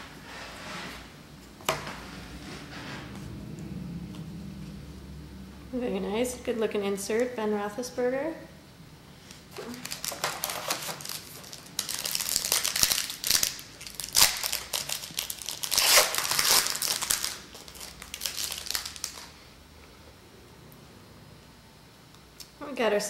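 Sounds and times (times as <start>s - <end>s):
wrapper crinkling and tearing: 9.5s - 19.4s.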